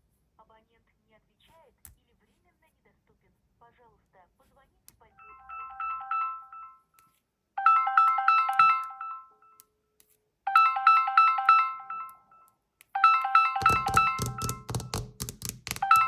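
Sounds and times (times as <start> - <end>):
smartphone ringtone: 5.2 - 7.0, 7.6 - 9.6, 10.5 - 14.9.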